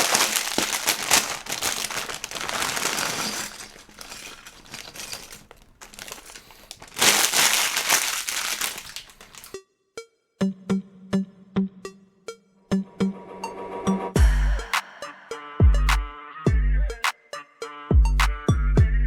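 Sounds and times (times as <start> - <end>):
plastic bag crinkling: 0.0 - 9.6.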